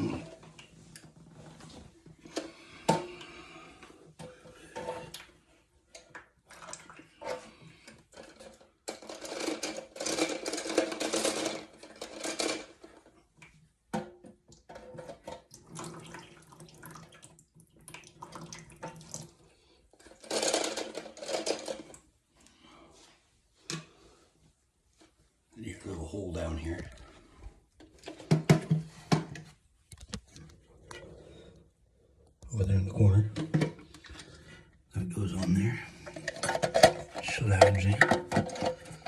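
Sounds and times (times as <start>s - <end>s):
plastic parts clicking and knocking: 0.0s - 16.0s, 20.0s - 22.1s, 27.8s - 31.6s, 33.2s - 34.4s, 35.3s - 39.0s
water splashing in toilet tank: 6.1s - 7.2s, 14.5s - 19.5s.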